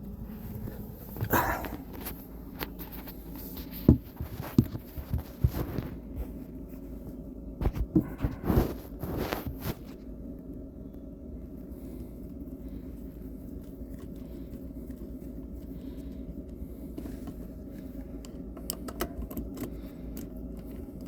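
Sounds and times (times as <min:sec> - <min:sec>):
steady low hum: 0:00.0 - 0:21.0
rustling scrapes: 0:00.2 - 0:07.0, 0:07.6 - 0:10.0.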